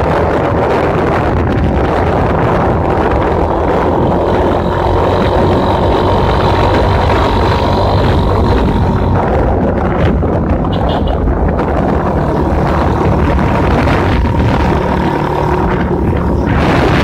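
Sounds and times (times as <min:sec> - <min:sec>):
motorcycle engine running: 0:00.0 - 0:17.0
wind rushing over microphone: 0:00.0 - 0:17.0.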